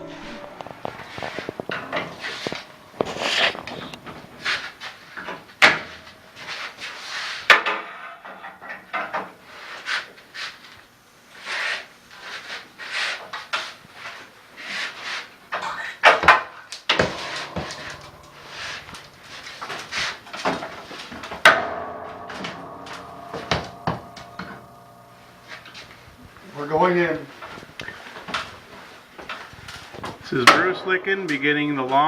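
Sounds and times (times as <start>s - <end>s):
wooden knocks and scrapes: 0.0s - 4.6s.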